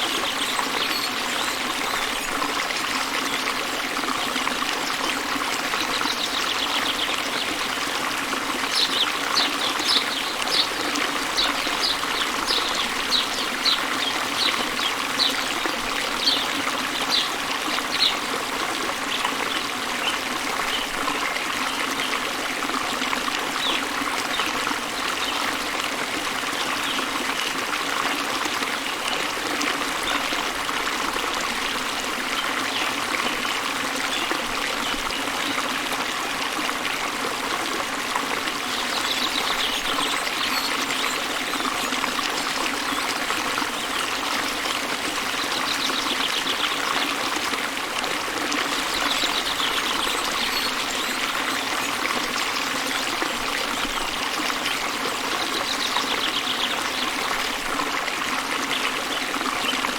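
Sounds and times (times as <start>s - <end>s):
waterfall rushing: 4.9s - 20.6s.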